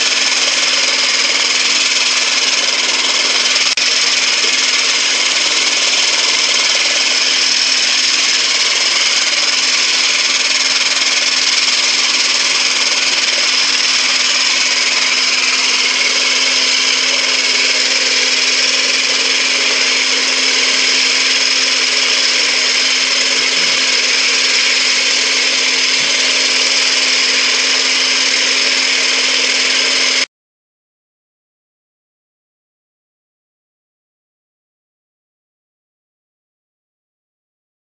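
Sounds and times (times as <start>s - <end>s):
loud high grinding hiss: 0.0s - 30.3s
motor hum: 0.0s - 30.3s.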